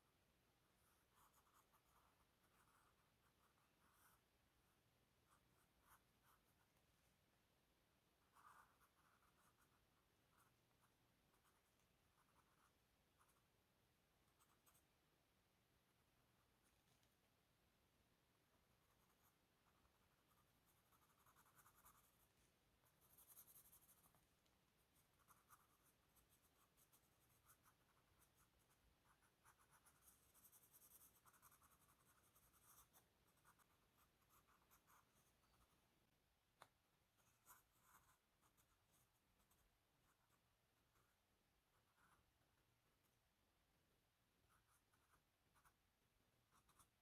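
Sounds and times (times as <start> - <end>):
drawing tool scratching on paper: 18.8 - 24.2, 25.0 - 35.8.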